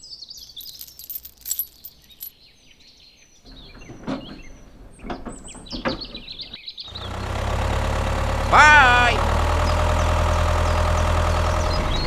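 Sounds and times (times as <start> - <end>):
birds chirping: 0.0 - 12.0
motor hum: 3.5 - 12.0.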